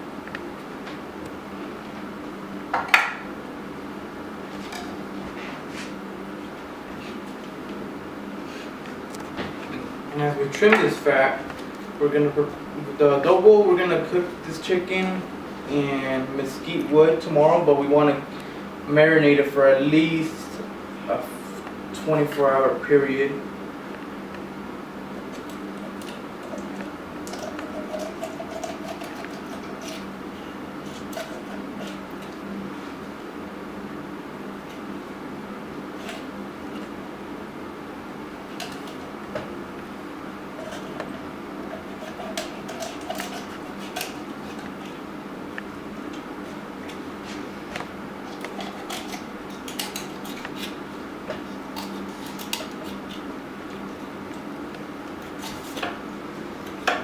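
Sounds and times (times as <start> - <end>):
steady background hum: 0.0 - 57.0
knife clicking and scraping: 42.0 - 44.7.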